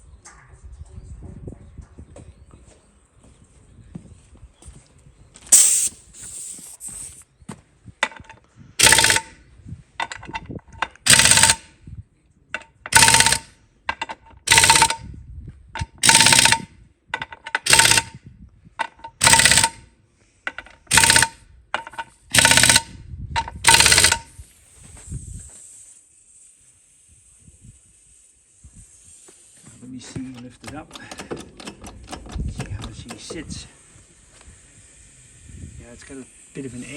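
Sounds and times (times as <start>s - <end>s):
impact wrench hammering: 8.8s - 9.3s, 11.0s - 11.6s, 12.6s - 15.0s, 15.8s - 16.6s, 17.2s - 18.1s, 18.8s - 19.8s, 20.5s - 24.3s, 30.1s - 33.5s.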